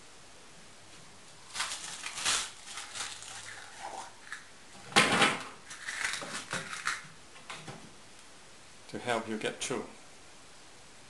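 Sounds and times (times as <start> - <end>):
small parts handled: 5.7 - 7.1.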